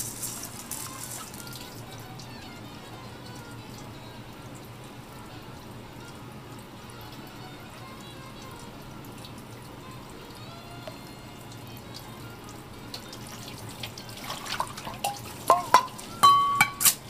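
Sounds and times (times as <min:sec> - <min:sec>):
soft background music: 0:00.0 - 0:17.0
water dripping in sink: 0:08.4 - 0:16.8.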